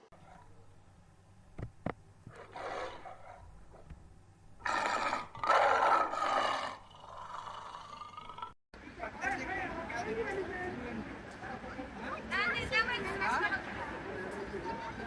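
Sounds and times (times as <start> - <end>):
large animal breathy calls: 0.1 - 0.9, 2.2 - 8.6.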